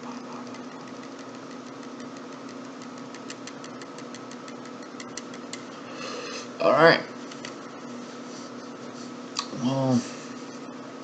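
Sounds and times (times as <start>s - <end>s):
steady low hum: 0.0s - 11.0s
computer mouse clicking: 0.4s - 5.6s.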